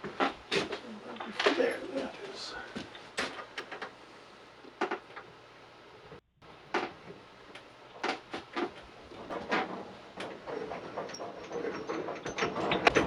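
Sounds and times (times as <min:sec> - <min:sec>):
metal parts clicking and knocking: 0:06.7 - 0:13.0.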